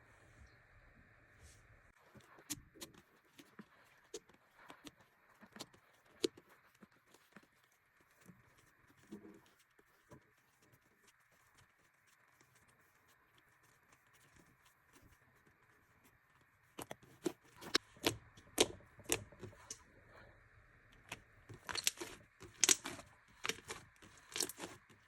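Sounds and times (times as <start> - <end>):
slime squeezed with popping: 21.5 - 24.8.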